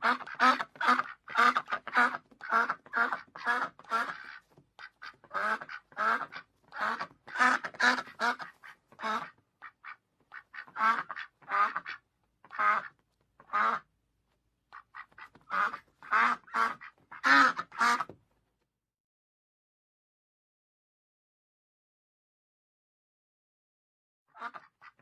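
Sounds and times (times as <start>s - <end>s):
duck quacking: 0.0s - 13.9s, 14.7s - 18.2s, 24.3s - 25.0s.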